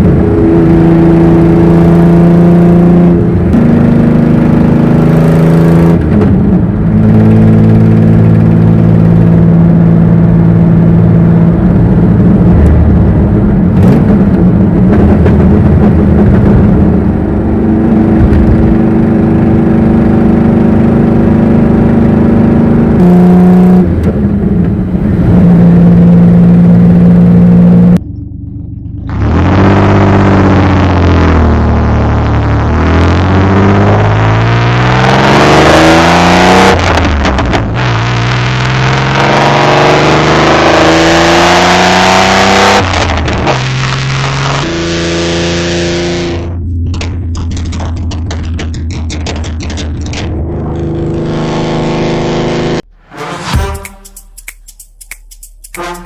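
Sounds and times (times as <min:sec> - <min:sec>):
car engine revving: 0:00.0 - 0:28.0, 0:29.1 - 0:53.7.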